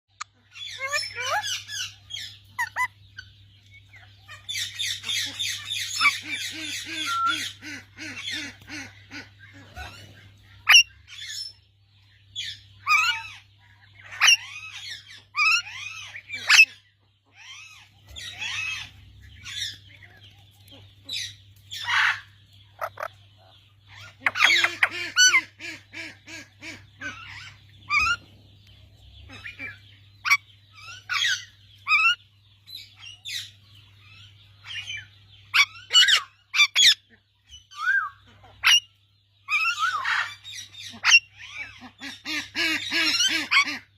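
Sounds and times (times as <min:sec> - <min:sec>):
parrot squawking and whistling: 0:06.8 - 0:07.5.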